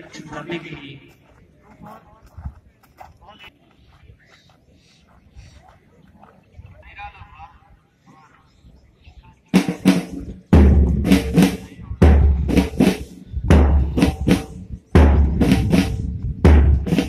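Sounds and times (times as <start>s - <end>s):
bass drum beat: 9.6s - 17.0s.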